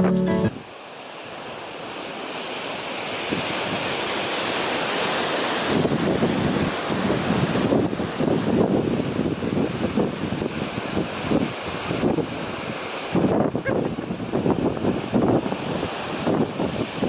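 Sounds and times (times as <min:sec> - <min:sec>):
waves breaking: 0:00.9 - 0:08.3
wind buffeting microphone: 0:05.8 - 0:17.0.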